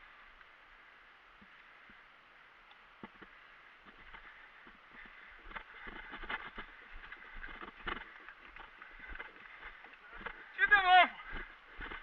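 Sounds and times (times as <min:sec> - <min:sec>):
footsteps through dry undergrowth: 0:02.8 - 0:12.0.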